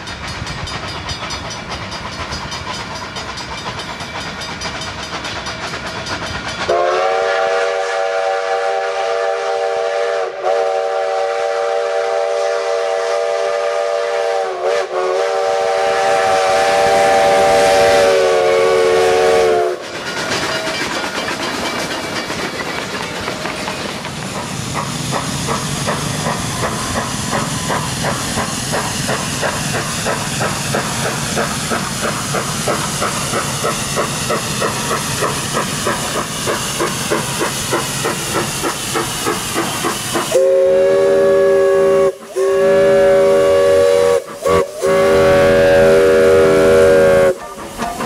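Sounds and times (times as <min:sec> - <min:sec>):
locomotive chuffing: 0:00.0 - 0:10.6, 0:13.2 - 0:48.0
steam hissing: 0:00.0 - 0:48.0
steam locomotive whistle: 0:06.6 - 0:19.8, 0:39.8 - 0:48.0.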